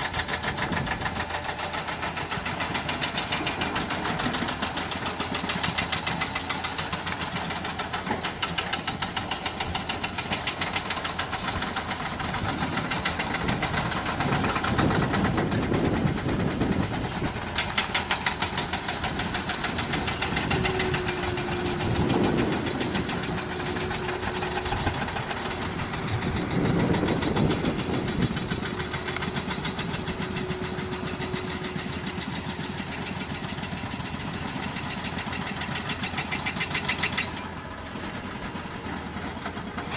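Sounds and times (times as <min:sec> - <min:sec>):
diesel engine clattering: 0:00.0 - 0:39.9
steady whine: 0:14.5 - 0:31.8.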